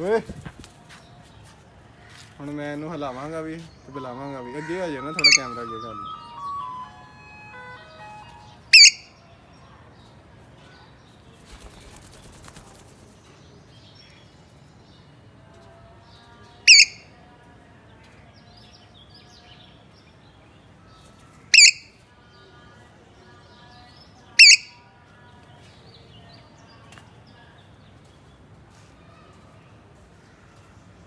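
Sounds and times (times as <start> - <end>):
parrot high-pitched calls: 3.9 - 9.1.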